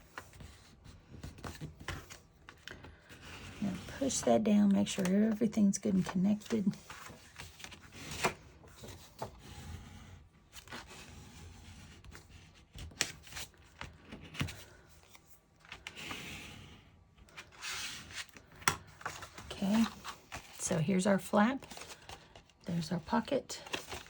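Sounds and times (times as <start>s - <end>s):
paper rustling: 0.0s - 9.4s, 17.3s - 20.6s, 21.5s - 24.0s.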